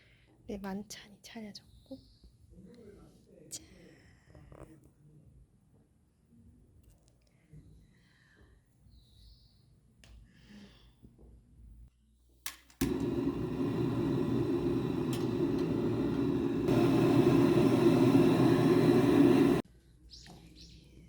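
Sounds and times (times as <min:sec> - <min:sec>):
click: 0:12.5 - 0:17.5
steady rushing noise: 0:12.8 - 0:19.6.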